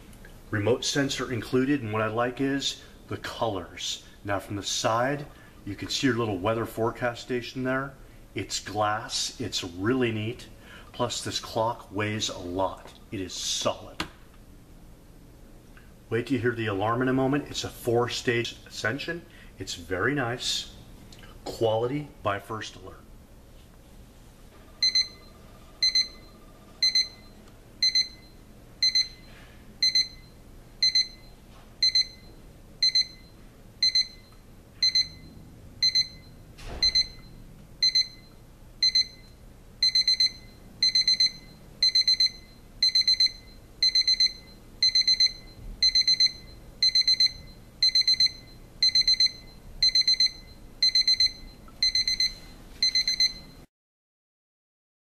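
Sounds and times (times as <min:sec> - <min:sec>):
alarm clock beeping: 0:24.8 - 0:53.6.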